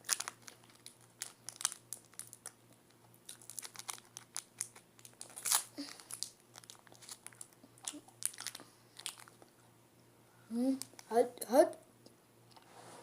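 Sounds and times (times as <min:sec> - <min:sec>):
plastic wrapper crinkling: 0:00.0 - 0:09.5.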